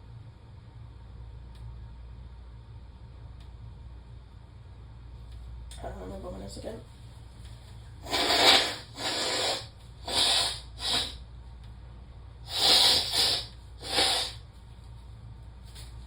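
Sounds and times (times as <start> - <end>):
woman sniffing and snorting: 8.0 - 11.2, 12.5 - 14.4.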